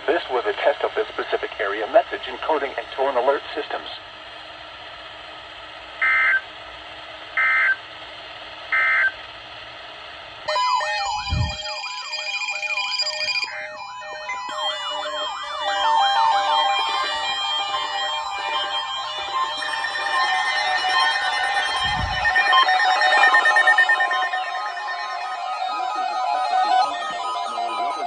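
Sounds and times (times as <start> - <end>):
radio receiver hiss: 0.0 - 4.1
rhythmic musical pattern: 10.5 - 28.0
short data bursts: 10.5 - 28.0
warbling siren-like electronic sound: 10.5 - 28.0.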